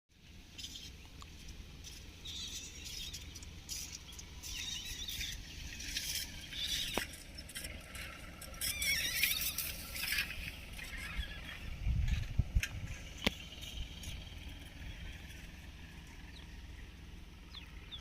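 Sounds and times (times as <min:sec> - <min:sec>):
small birds chirping: 0:00.1 - 0:07.6, 0:08.5 - 0:18.0
steady low rumble: 0:09.5 - 0:18.0.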